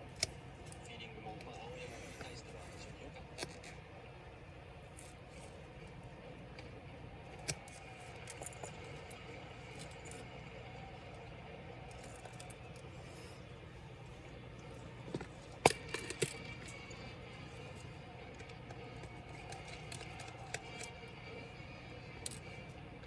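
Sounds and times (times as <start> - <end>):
steady low hum: 0.0 - 23.0
tools clicking and tapping: 15.0 - 17.0, 17.7 - 21.2, 21.8 - 22.6.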